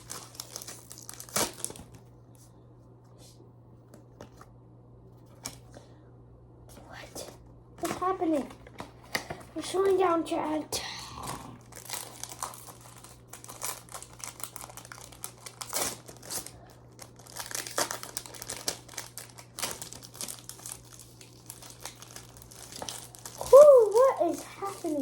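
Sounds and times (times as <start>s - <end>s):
foil wrappers crinkling and tearing: 0.0s - 2.0s, 11.6s - 25.0s.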